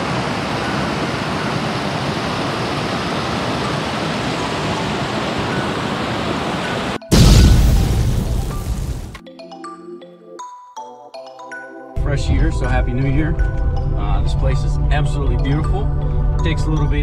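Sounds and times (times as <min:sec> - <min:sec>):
steady rushing noise: 0:00.0 - 0:09.2
deep boom: 0:07.1 - 0:09.2.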